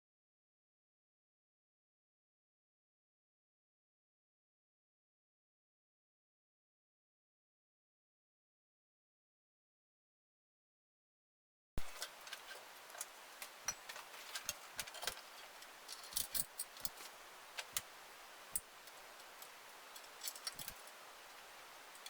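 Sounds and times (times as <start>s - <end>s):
metallic clicks and taps of tools: 11.8s - 17.9s, 18.5s - 22.0s.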